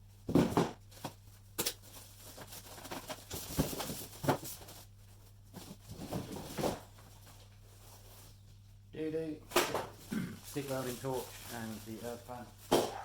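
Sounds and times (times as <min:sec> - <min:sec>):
parts knocking in cardboard box: 0:00.3 - 0:01.2
packaging rustling: 0:10.5 - 0:13.0.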